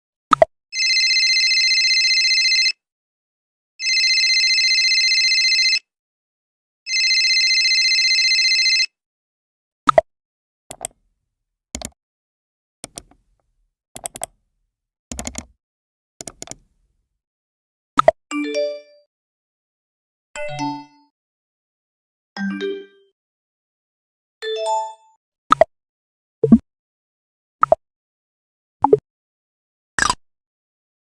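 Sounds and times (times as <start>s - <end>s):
telephone ringing: 0.8s - 2.8s, 3.8s - 5.9s, 6.9s - 9.0s
short clicks: 12.8s - 14.4s.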